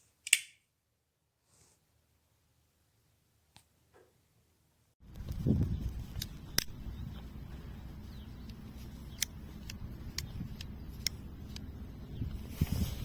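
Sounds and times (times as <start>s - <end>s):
low steady rumble: 5.0s - 13.0s
pocket knife metal clicks: 8.4s - 11.7s.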